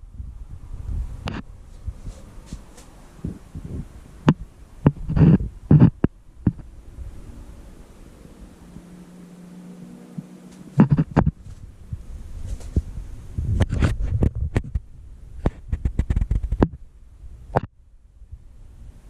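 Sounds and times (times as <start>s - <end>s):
low thumps: 1.2s - 7.6s, 10.1s - 16.8s
sharp clicks and knocks: 10.8s - 11.6s, 13.6s - 16.8s.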